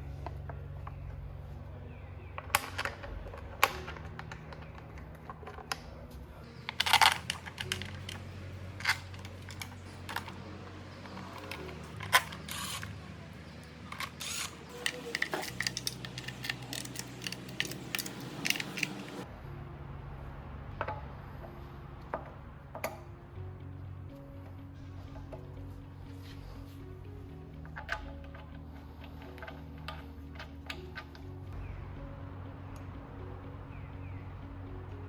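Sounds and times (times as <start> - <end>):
background music: 0.0 - 35.0
hand tools clicking on metal: 6.5 - 10.4, 11.1 - 19.2.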